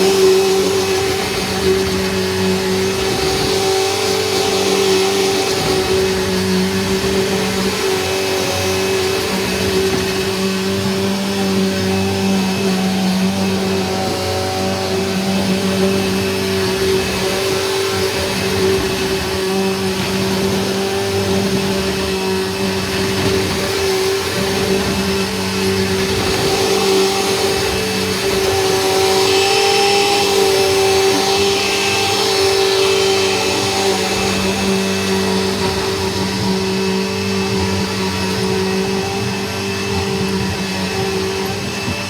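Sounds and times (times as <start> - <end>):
vacuum cleaner running: 0.0 - 42.0.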